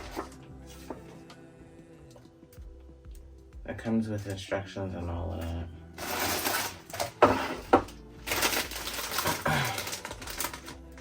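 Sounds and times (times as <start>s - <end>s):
packaging rustling and crinkling: 8.2s - 11.0s.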